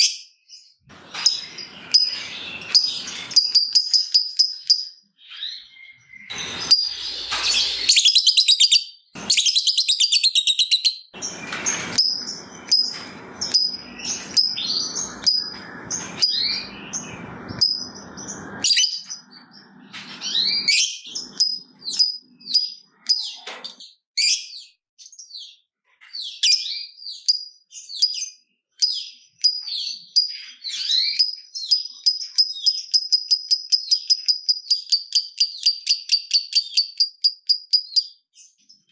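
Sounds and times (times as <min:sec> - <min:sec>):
lovebird chattering: 0:06.3 - 0:23.3
bird ticking notes: 0:11.2 - 0:18.6.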